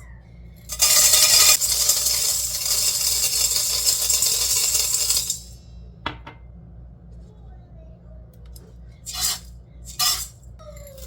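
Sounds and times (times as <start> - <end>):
dry grains poured into metal pot: 0.7 - 5.4.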